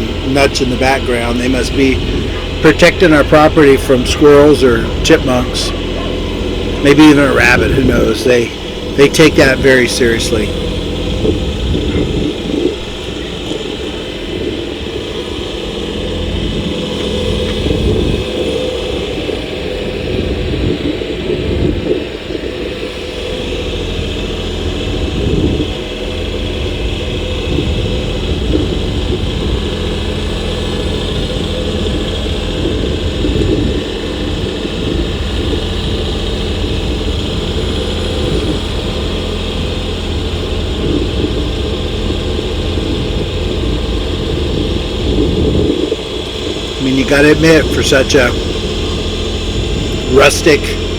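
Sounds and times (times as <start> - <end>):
tractor diesel engine running: 0.0 - 50.9.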